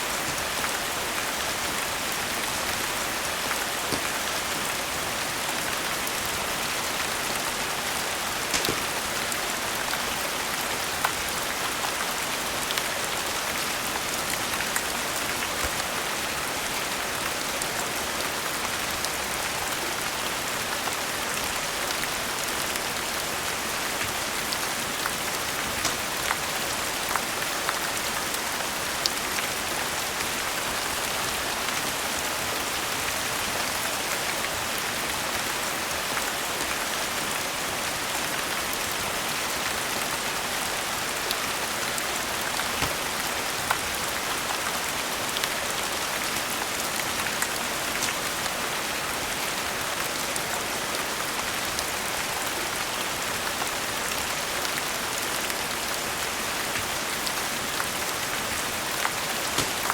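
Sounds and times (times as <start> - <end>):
steady rain falling: 0.0 - 59.9
crackling wood fire: 6.1 - 11.8, 23.8 - 28.5, 41.4 - 44.6, 56.4 - 59.9.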